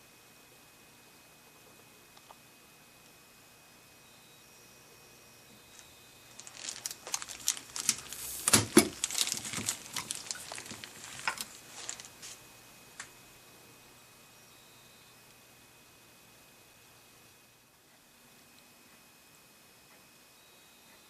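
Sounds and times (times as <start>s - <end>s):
crinkly rustling: 5.7s - 12.4s.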